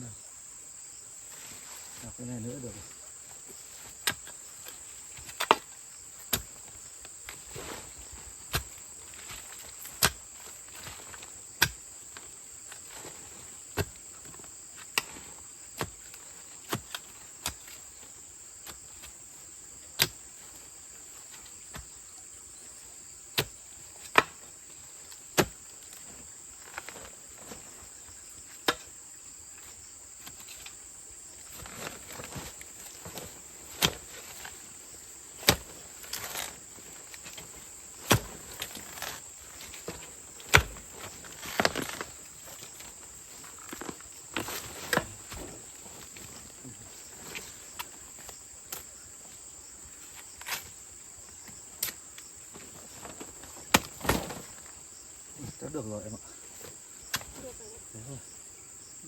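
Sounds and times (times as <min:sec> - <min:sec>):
insects chirping chorus: 0:00.0 - 0:59.0
digging tool chopping soil: 0:03.9 - 0:18.0, 0:19.8 - 0:20.2, 0:23.3 - 0:24.5, 0:25.1 - 0:27.7, 0:28.5 - 0:28.9, 0:31.4 - 0:46.4, 0:53.0 - 0:54.6.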